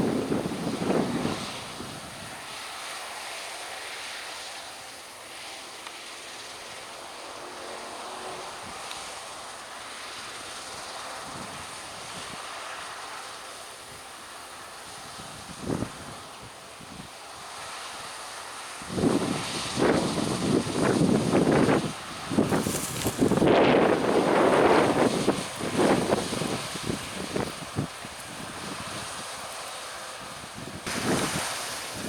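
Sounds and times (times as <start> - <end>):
wind buffeting microphone: 0.0 - 2.4, 18.8 - 29.5, 30.2 - 32.0
distant harvest machinery drone: 0.0 - 15.1, 15.8 - 32.0.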